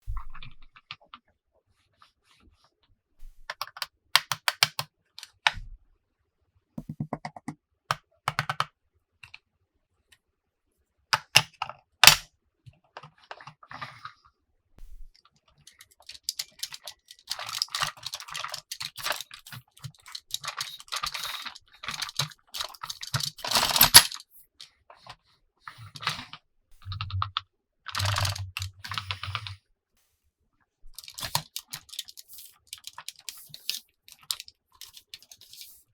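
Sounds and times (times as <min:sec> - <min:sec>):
plastic packaging clicking and crinkling: 0:15.3 - 0:24.4, 0:26.9 - 0:29.6, 0:31.0 - 0:35.8.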